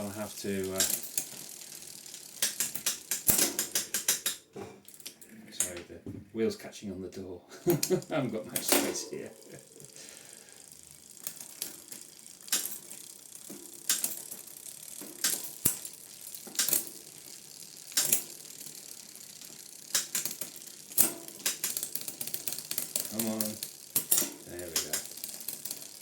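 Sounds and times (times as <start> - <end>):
ratchet-like clicking: 0.0 - 5.8, 7.6 - 26.0
metallic clicks and knocks: 2.4 - 5.8.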